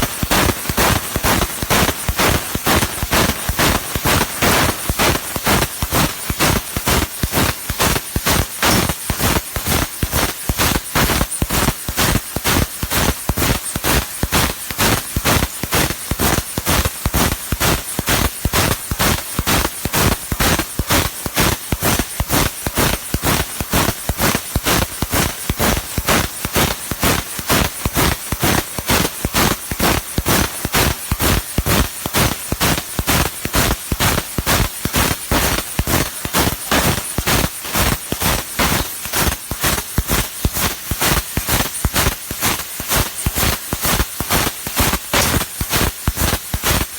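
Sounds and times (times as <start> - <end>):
hiss: 0.0 - 46.9
laser cutting steel crackle: 11.4 - 46.9.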